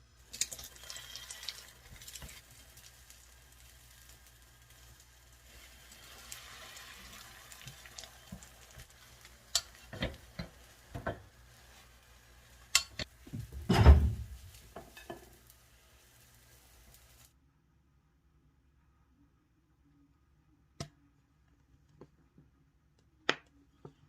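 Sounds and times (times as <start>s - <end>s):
faint sizzle: 0.0s - 17.4s
utensils and cookware knocking: 9.5s - 11.3s, 12.7s - 14.2s.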